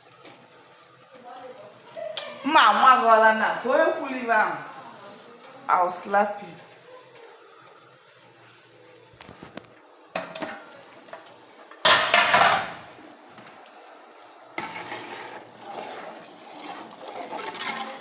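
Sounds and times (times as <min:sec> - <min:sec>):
pots and utensils clattering: 0:09.2 - 0:13.6, 0:14.6 - 0:18.0.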